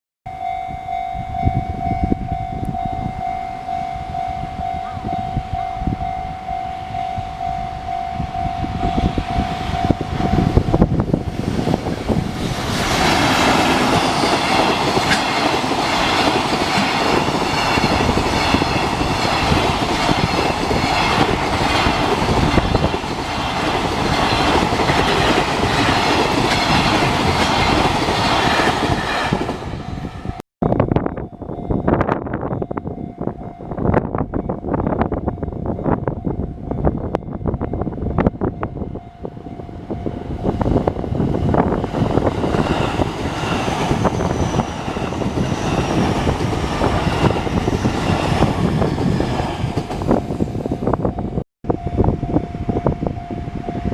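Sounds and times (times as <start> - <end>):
level crossing warning bell: 0.3 - 10.6
train passing close by: 0.3 - 53.9.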